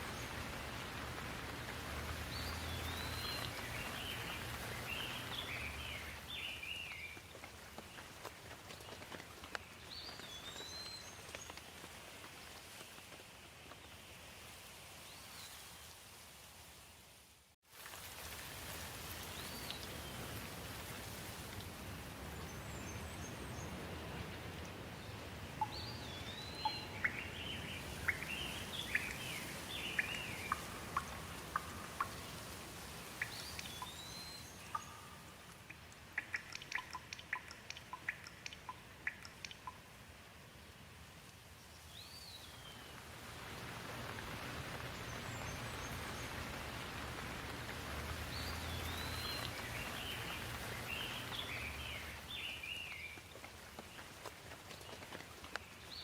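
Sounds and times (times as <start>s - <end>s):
birds chirping: 0.0s - 11.6s, 25.0s - 39.8s, 43.8s - 53.3s
steady rain: 0.0s - 56.0s.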